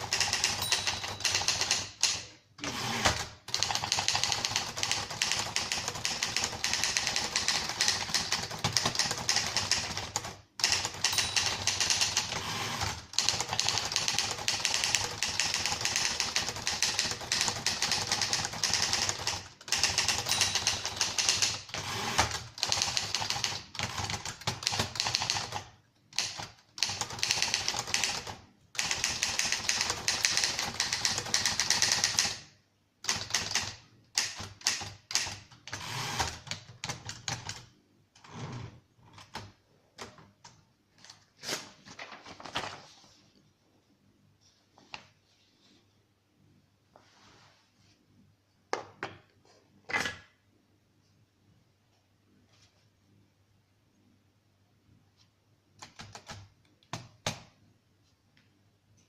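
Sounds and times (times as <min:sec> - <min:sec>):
manual typewriter typing: 0:00.0 - 0:38.3, 0:39.1 - 0:41.2, 0:55.8 - 0:57.5.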